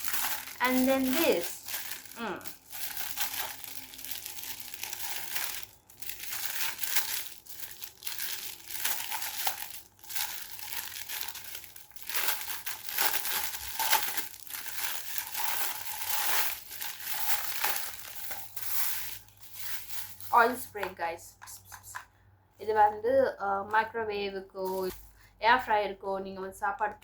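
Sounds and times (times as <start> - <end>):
packaging crinkling and tearing: 0.0 - 20.4.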